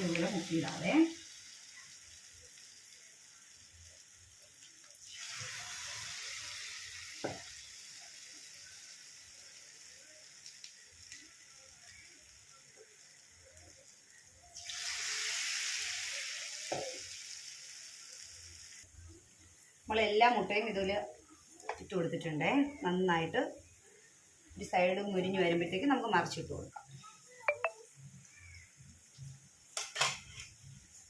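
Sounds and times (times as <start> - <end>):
hot oil sizzling: 0.0 - 31.0.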